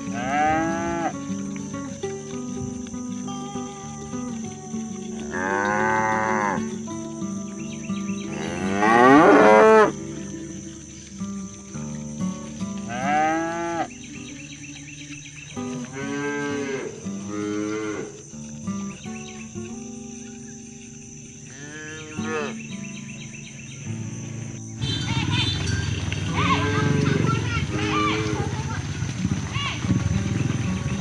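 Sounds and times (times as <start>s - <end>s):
cattle mooing: 0.0s - 1.2s, 3.4s - 6.8s, 8.2s - 10.0s, 12.8s - 13.9s, 15.9s - 18.2s, 21.5s - 22.6s, 24.9s - 28.7s
high insect-like drone: 0.0s - 31.0s.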